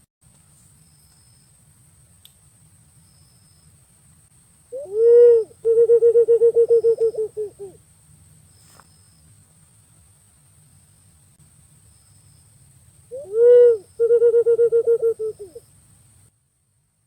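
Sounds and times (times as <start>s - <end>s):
pigeon cooing: 4.8s - 7.8s, 13.1s - 15.6s.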